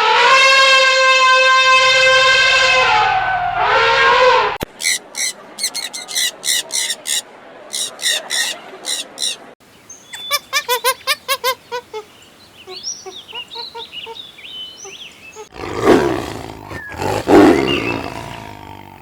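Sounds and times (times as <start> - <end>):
bird chirping: 4.8 - 15.5, 16.7 - 18.2.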